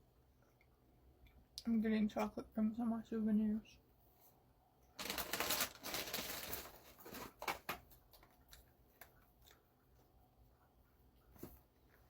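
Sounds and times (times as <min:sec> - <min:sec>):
shopping bags crinkling: 0:05.0 - 0:08.1.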